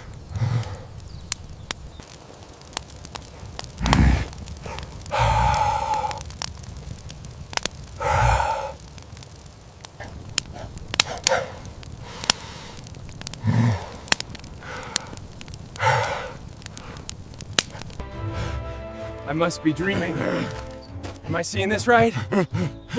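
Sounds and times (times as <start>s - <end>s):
breathy sighs: 0.0s - 1.0s, 3.8s - 6.4s, 8.0s - 8.8s, 10.0s - 15.2s, 15.8s - 17.1s
sharp clicks: 10.0s - 18.0s.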